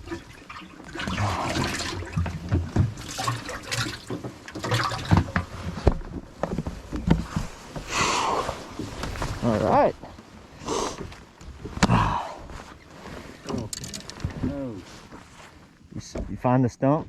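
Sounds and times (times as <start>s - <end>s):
water splashing and sloshing: 0.0s - 11.8s.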